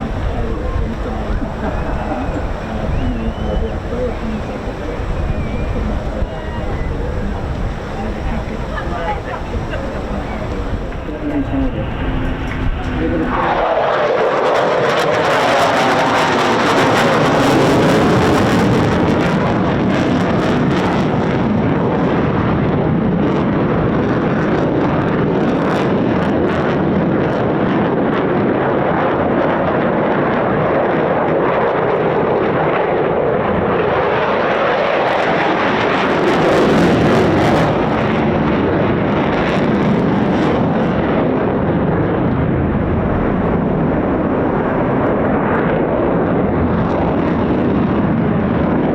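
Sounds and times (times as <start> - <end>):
loud jet noise: 0.0 - 20.3, 32.0 - 48.9.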